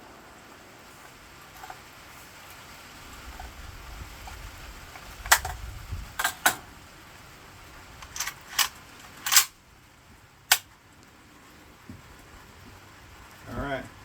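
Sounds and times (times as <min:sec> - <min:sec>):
rifle action metallic clicks: 0:08.0 - 0:09.6, 0:10.5 - 0:10.7.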